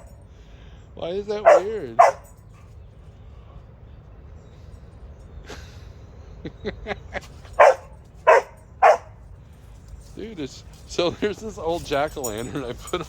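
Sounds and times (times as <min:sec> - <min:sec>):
dog barking: 0:01.4 - 0:02.7, 0:07.6 - 0:09.2
dog yipping: 0:01.4 - 0:02.7, 0:07.6 - 0:09.2.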